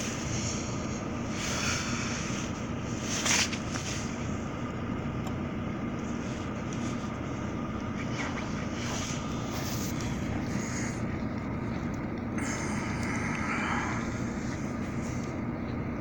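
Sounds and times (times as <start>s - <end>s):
car running noise: 0.0s - 16.0s.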